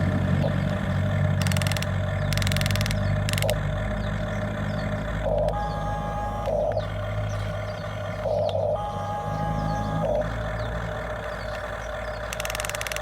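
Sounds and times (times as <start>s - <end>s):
vehicle engine running: 0.0s - 13.0s
rapid high ticking: 0.5s - 5.5s, 10.0s - 13.0s.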